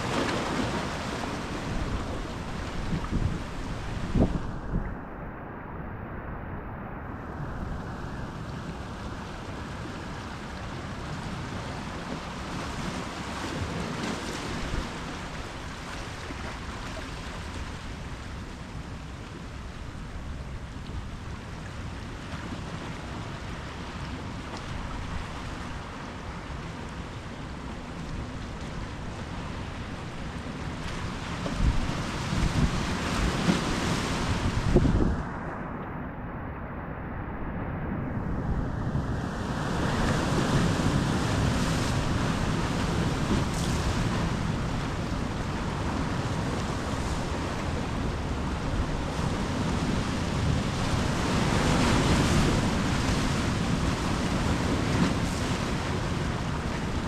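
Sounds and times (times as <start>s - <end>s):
wind buffeting microphone: 0.0s - 10.3s, 28.4s - 57.0s
ocean waves washing ashore: 0.0s - 57.0s.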